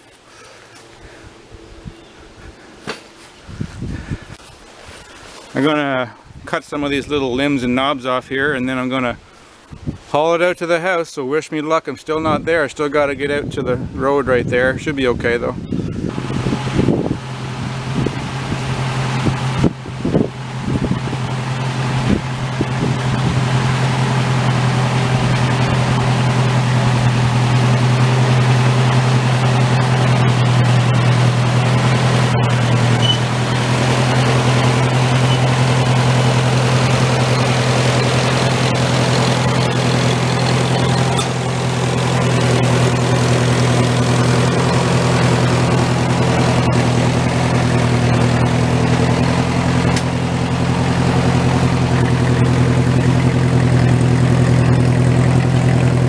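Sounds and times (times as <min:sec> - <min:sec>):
tractor engine running: 0:15.6 - 0:56.0.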